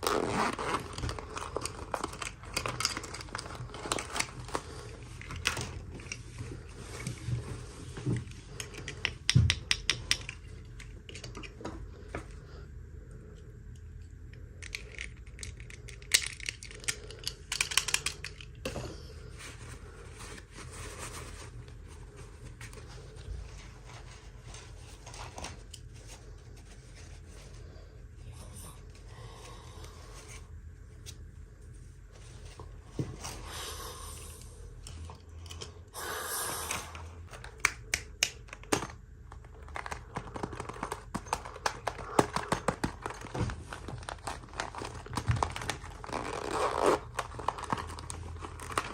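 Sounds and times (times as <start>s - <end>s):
packaging rustling: 0.0s - 8.9s, 38.4s - 48.9s
taps and clicks on packaging: 39.7s - 43.4s.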